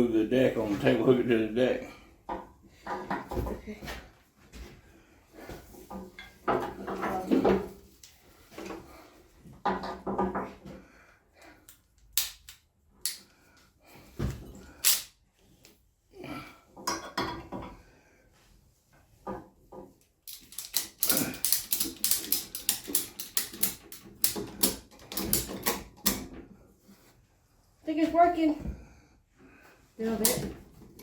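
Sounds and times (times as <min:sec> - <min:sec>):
ratchet metal clicks: 0:20.2 - 0:26.2
ratchet strap clanks: 0:20.2 - 0:26.3.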